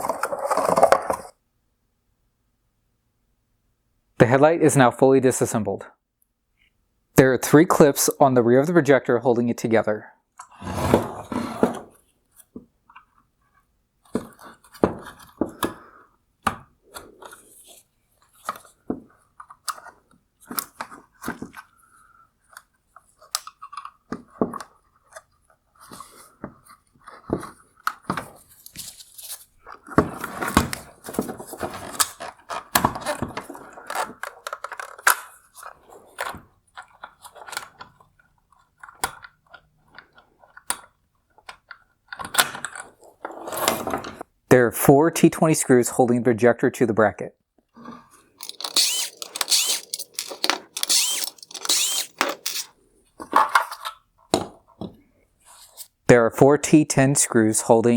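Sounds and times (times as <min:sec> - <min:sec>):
plastic crunching and scraping: 0:00.0 - 0:01.4, 0:48.4 - 0:52.7
plastic clips clicking and snapping: 0:48.4 - 0:52.7.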